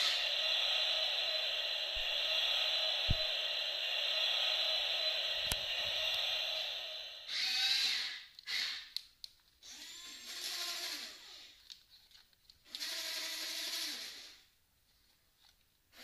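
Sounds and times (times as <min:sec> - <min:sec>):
small electric motors whining: 0:00.0 - 0:08.9, 0:09.6 - 0:11.6, 0:12.7 - 0:14.4.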